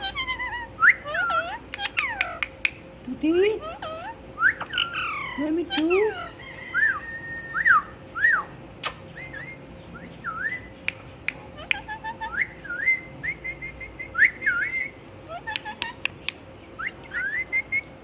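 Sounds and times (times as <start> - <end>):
parrot whistling: 0.0 - 2.8, 3.6 - 18.0
parrot clicks: 1.7 - 2.8, 10.8 - 12.0, 15.5 - 16.4.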